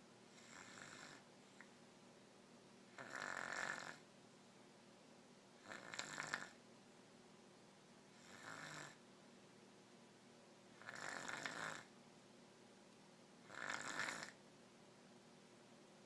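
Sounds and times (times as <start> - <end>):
person snoring: 0.3 - 1.2, 3.0 - 4.0, 5.6 - 6.6, 8.2 - 9.0, 10.8 - 11.9, 13.4 - 14.4.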